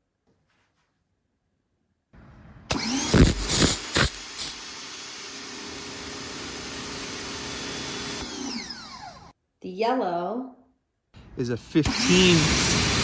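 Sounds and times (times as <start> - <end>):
pressure washer motor: 2.7 - 9.3, 11.8 - 13.0
pressure washer spray hiss: 3.0 - 8.2, 12.0 - 13.0.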